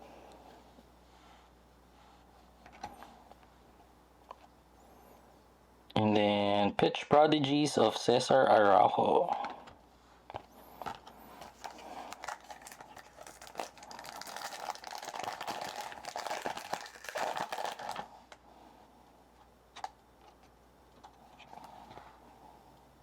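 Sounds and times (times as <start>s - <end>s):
foil wrapper tearing and crinkling: 11.4s - 18.1s.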